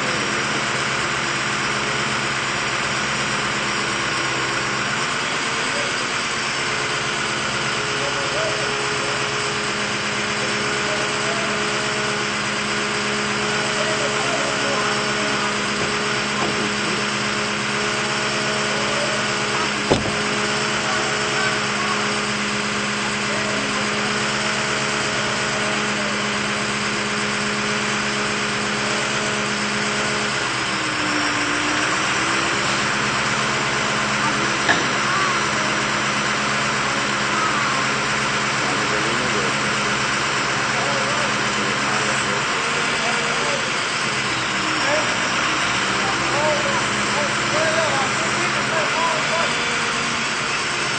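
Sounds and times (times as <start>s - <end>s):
engine running steadily: 0.0s - 50.9s
sharp knock: 19.9s - 20.4s.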